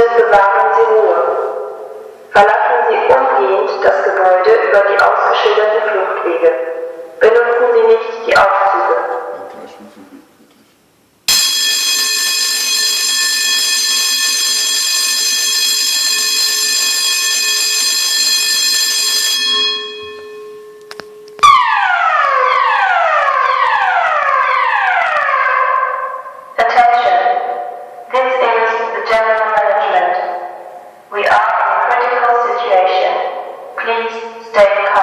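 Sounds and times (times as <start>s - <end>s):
falling alarm tone: 11.3s - 26.6s
steady electronic alarm tone: 11.3s - 26.6s.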